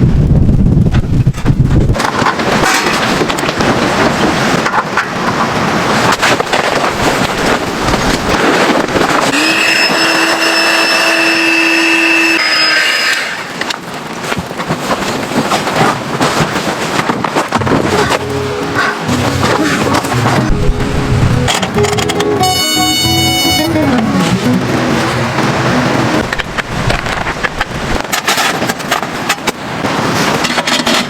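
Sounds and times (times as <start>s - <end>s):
wind buffeting microphone: 0.0s - 9.6s, 24.9s - 30.6s
steady pitched tone: 17.6s - 26.9s.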